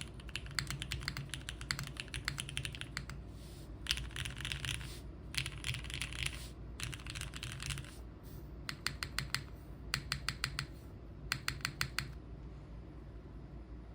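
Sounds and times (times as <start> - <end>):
typing on mechanical keyboard: 0.0 - 3.2, 3.8 - 8.0, 8.7 - 10.7, 11.3 - 12.2.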